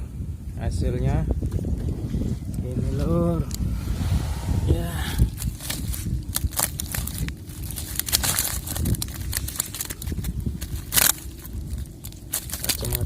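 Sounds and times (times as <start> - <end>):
steady low rumble: 0.0 - 13.0
crackling rustling handling noise: 5.3 - 13.0.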